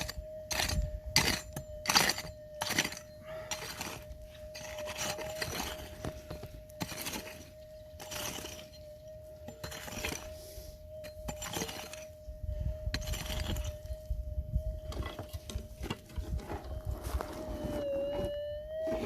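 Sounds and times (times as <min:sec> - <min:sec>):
digging tool striking stony ground: 0:00.0 - 0:08.8, 0:09.5 - 0:10.3, 0:11.0 - 0:12.1, 0:13.0 - 0:13.7
metal detector hum: 0:00.0 - 0:19.0.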